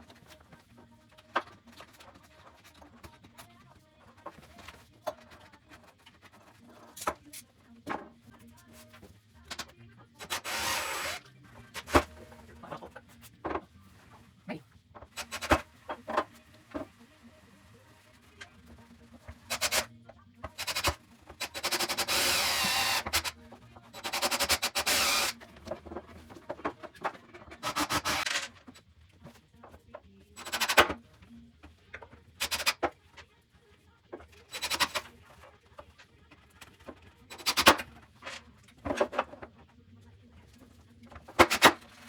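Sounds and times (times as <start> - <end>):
power driver whining: 10.3 - 11.2, 21.6 - 23.3, 24.6 - 25.4.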